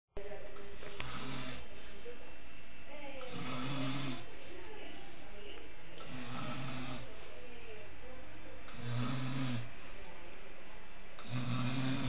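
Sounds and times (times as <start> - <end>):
person snoring: 3.2 - 4.3, 6.0 - 7.1, 8.7 - 9.7, 11.2 - 12.0.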